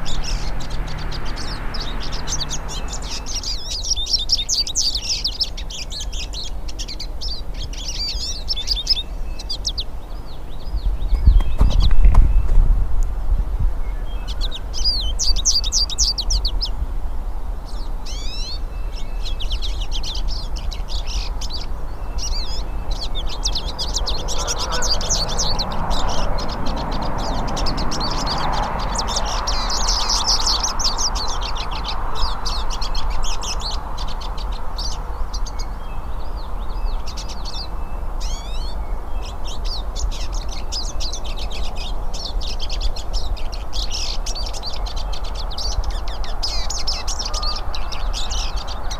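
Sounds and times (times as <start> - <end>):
birds twittering: 0.0 - 12.9, 13.6 - 48.9
steady low rumble: 10.0 - 37.6.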